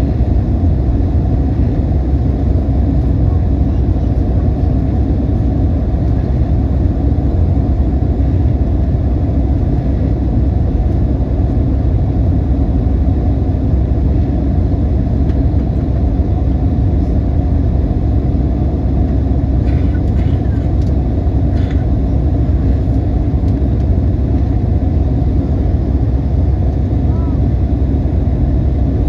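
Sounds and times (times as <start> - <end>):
airliner cabin rumble: 0.0 - 29.0.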